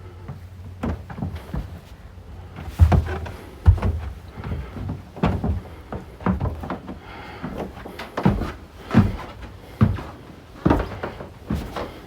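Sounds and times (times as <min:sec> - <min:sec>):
dull thumps and knocks: 0:02.6 - 0:12.0.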